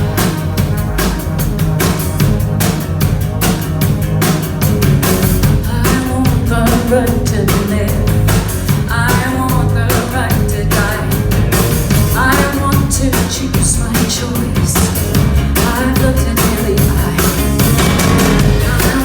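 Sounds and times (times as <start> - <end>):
live rock band playing: 0.0 - 19.0
woman singing lead: 5.6 - 11.4, 12.1 - 17.8, 18.4 - 19.0.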